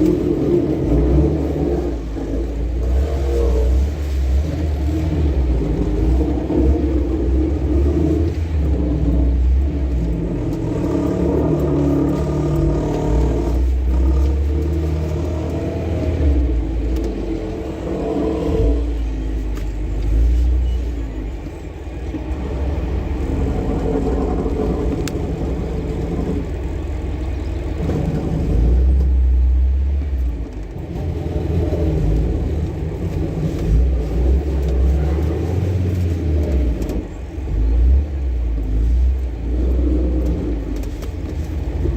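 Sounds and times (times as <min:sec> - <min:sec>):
car road and engine rumble: 0:00.0 - 0:41.9.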